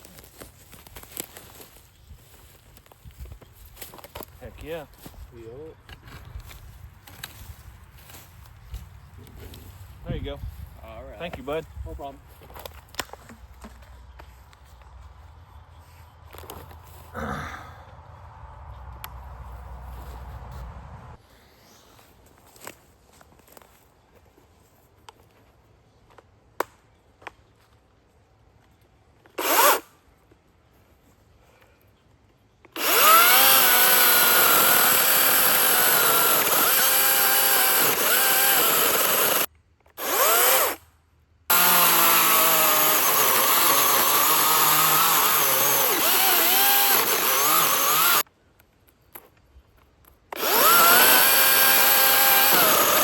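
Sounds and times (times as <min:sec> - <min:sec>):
chainsaw cutting wood: 0:29.4 - 0:29.9, 0:32.7 - 0:40.8, 0:41.5 - 0:48.2, 0:50.3 - 0:53.0.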